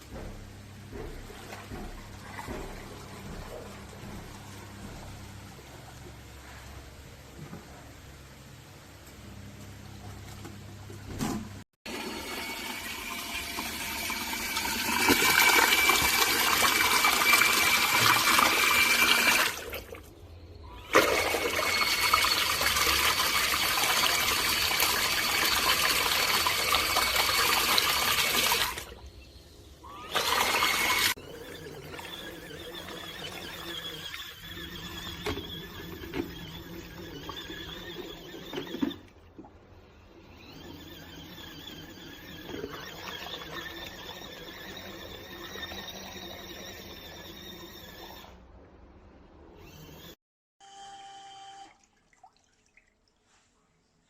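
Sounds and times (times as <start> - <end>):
water running hard: 20.9 - 28.8, 30.0 - 34.3
uneven water splashing: 51.7 - 53.6.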